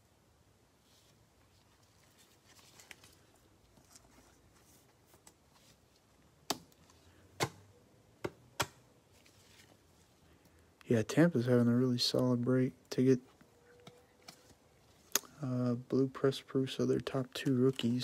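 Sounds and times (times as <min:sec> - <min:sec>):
cards rustling and sliding: 0:00.9 - 0:07.6, 0:09.1 - 0:10.1.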